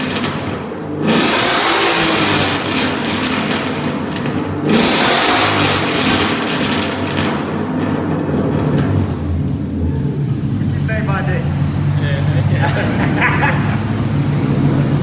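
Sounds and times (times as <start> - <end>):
loud car engine revving: 0.0 - 15.0.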